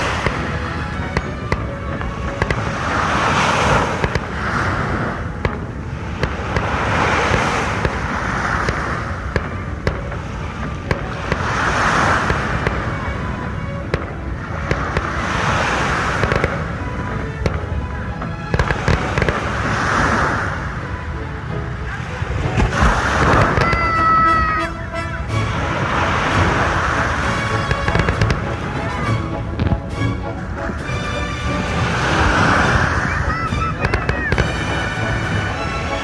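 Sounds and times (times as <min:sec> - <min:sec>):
fireworks bangs and crackling pops: 0:00.0 - 0:20.2, 0:22.5 - 0:24.5, 0:27.6 - 0:28.6, 0:33.3 - 0:34.8
fireworks hiss: 0:02.3 - 0:12.9.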